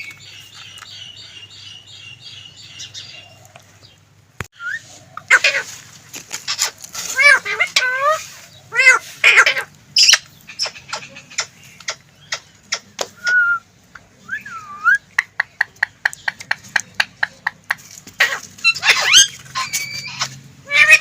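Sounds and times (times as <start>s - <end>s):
parakeet harsh calls: 5.3s - 5.7s, 6.4s - 11.5s, 18.2s - 21.0s.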